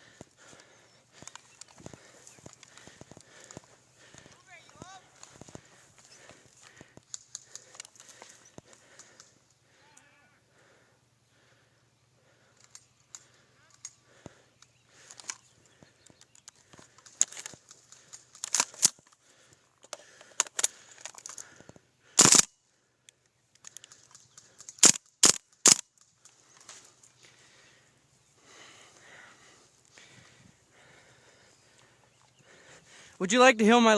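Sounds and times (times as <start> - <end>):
faint clicking: 0.0 - 9.6, 12.2 - 21.9, 23.0 - 27.7
airsoft gun shots: 22.2 - 22.5.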